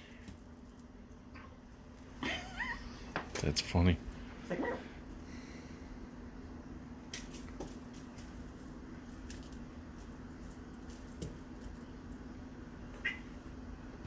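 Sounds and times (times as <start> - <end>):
steady low hum: 0.0 - 14.0
cats playing with a toy: 7.1 - 11.9.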